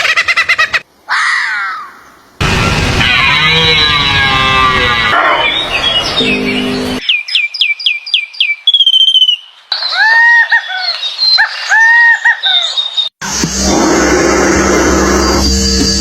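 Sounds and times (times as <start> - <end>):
birds chirping and whistling: 5.1 - 13.2.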